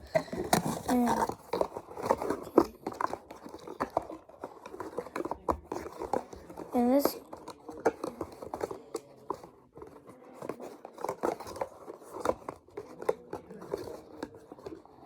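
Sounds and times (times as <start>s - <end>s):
cardboard box scraping: 0.0s - 8.9s.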